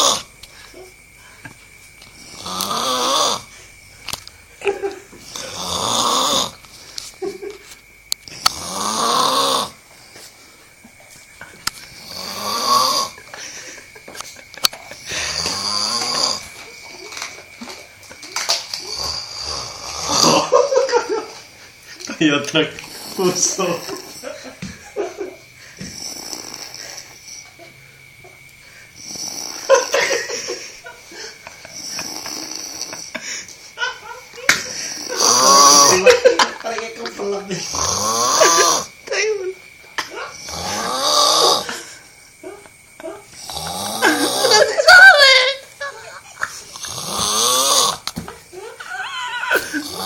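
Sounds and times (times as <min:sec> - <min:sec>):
person snoring loudly: 0:00.0 - 0:00.3, 0:02.2 - 0:03.5, 0:05.2 - 0:06.6, 0:08.3 - 0:09.8, 0:12.0 - 0:13.3, 0:15.0 - 0:16.7, 0:18.8 - 0:20.6, 0:22.8 - 0:24.2, 0:25.8 - 0:27.4, 0:29.0 - 0:30.2, 0:31.7 - 0:33.2, 0:34.7 - 0:36.2, 0:37.6 - 0:39.0, 0:40.3 - 0:42.0, 0:43.4 - 0:44.8, 0:46.7 - 0:48.2, 0:49.5 - 0:50.0.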